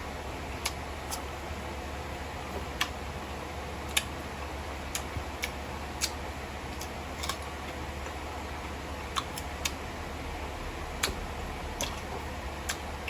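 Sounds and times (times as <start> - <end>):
low hum: 0.0 - 2.2, 7.8 - 13.0
chewing and mouth clicks: 4.9 - 8.2, 9.1 - 9.8.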